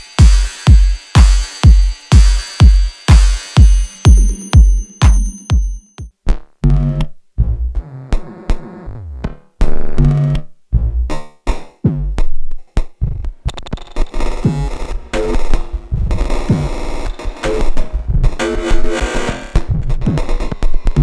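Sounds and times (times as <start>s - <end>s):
electronic drum hits: 0.0s - 6.1s
kick drum pattern: 0.0s - 6.1s.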